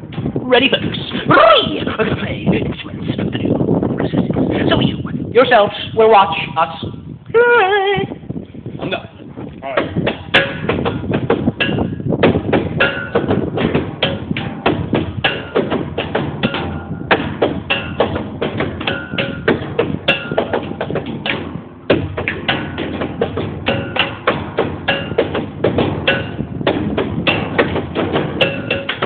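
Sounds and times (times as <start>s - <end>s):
percussive knocking and tapping: 9.7s - 29.0s.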